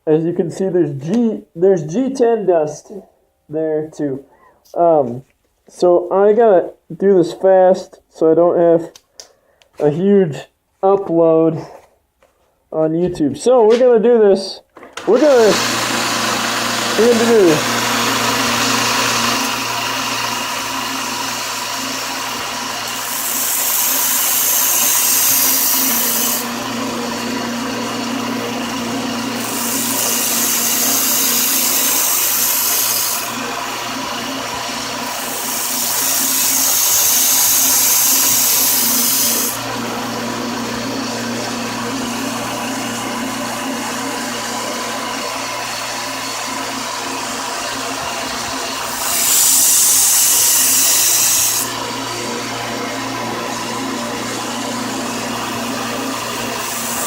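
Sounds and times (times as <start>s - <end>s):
belt sander motor hum: 15.0s - 57.0s
knife blades grinding: 23.2s - 26.4s.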